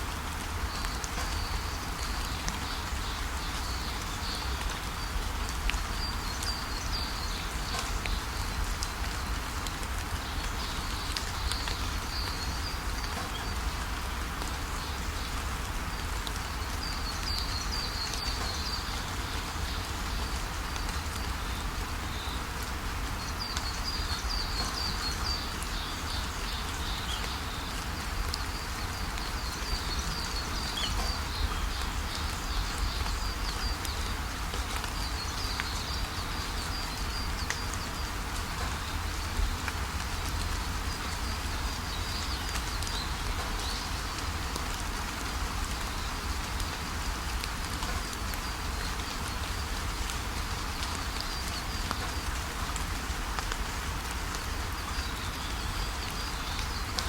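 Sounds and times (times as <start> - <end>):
small birds chirping: 0.6 - 22.5, 23.2 - 52.7.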